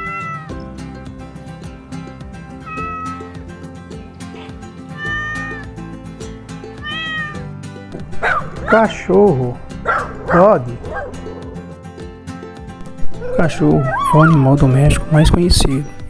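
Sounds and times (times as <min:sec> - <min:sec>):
cat meowing: 0:00.0 - 0:00.6, 0:02.6 - 0:03.3, 0:04.9 - 0:05.8, 0:06.7 - 0:07.5, 0:13.1 - 0:15.3.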